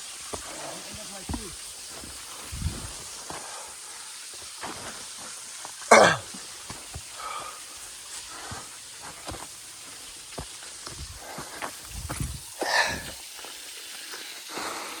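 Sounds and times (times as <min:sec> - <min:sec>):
background hiss: 0:00.0 - 0:15.0
footsteps scrambling on dirt: 0:00.1 - 0:03.5, 0:06.3 - 0:13.2.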